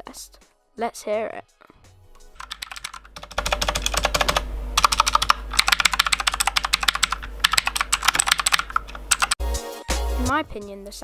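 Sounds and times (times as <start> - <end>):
mechanical keyboard typing: 2.4 - 9.4.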